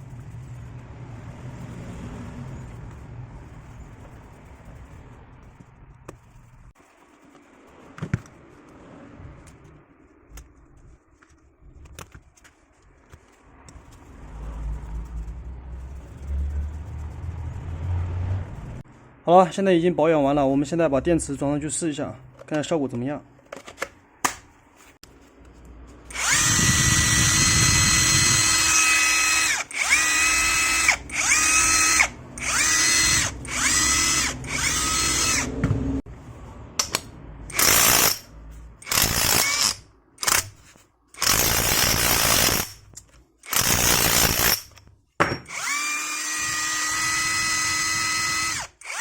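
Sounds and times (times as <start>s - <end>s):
impact wrench motor whine: 26.1s - 35.7s, 37.5s - 40.5s, 41.2s - 42.8s, 43.4s - 49.0s.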